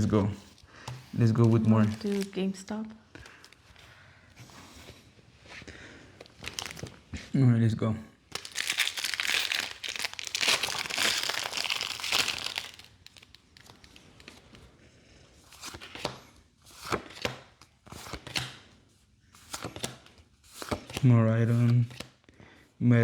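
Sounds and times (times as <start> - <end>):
foil wrapper tearing and crinkling: 1.3 - 2.6, 6.4 - 6.8, 8.3 - 14.0
cards snapping and flicking: 16.8 - 18.6.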